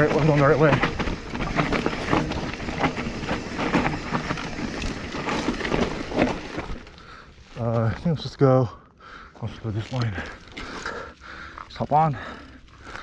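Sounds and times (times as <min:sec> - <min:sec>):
bike frame and chain rattling: 0:00.0 - 0:08.0
bike tyres crunching on dirt: 0:00.0 - 0:08.7, 0:09.5 - 0:13.0.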